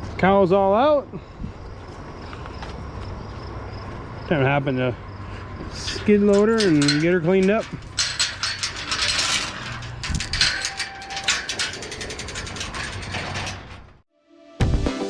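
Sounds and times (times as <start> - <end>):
metallic mechanical rattling: 5.8 - 14.0
music: 14.1 - 15.0.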